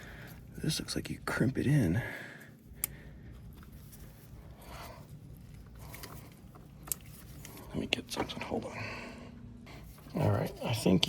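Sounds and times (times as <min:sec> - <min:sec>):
low steady hum: 0:00.0 - 0:11.0
soft rustle: 0:03.3 - 0:08.4.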